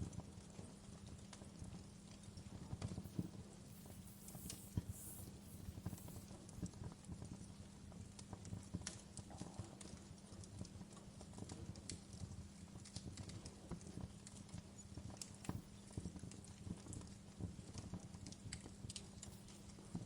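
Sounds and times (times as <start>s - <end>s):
wood fire crackling: 3.0s - 6.4s.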